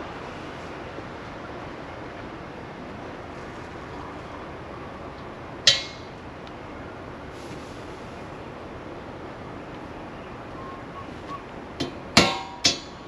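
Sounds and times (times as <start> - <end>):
steady low hiss: 0.0 - 13.0
sharp metallic clink: 5.7 - 6.1.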